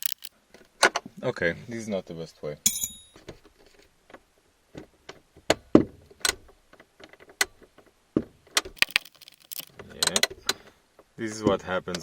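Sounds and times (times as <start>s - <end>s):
hand tool clicking on metal fasteners: 0.0s - 0.3s, 8.8s - 9.7s.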